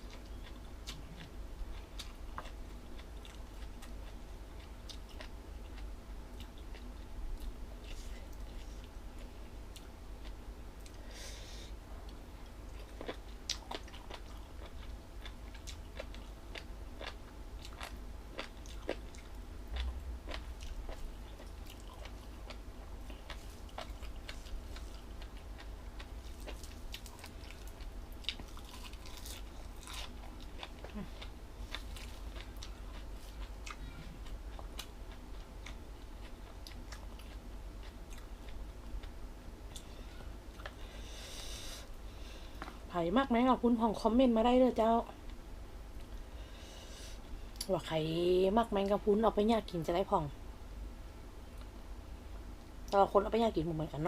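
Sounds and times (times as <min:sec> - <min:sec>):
chewing crunchy food: 0:00.0 - 0:11.0, 0:12.0 - 0:41.8
low steady hum: 0:00.0 - 0:54.0.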